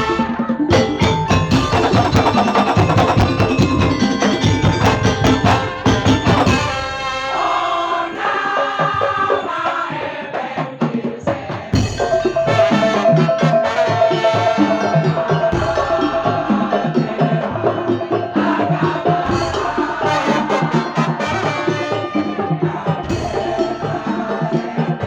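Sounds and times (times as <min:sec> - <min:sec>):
rapid bamboo slit drum beating: 0:00.0 - 0:06.9
pitched melody: 0:00.0 - 0:07.3, 0:12.0 - 0:17.1, 0:19.3 - 0:24.0.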